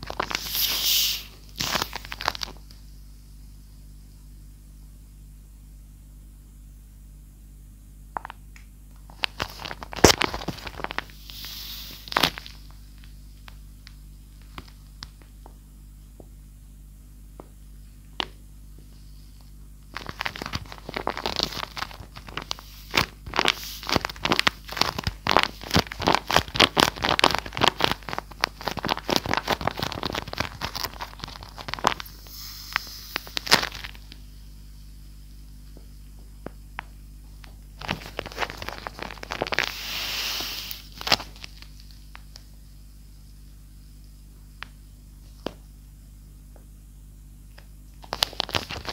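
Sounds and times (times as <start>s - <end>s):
paper crinkling and crackling: 0.0s - 2.8s, 9.0s - 15.4s, 19.3s - 34.2s, 37.3s - 42.5s, 48.0s - 48.9s.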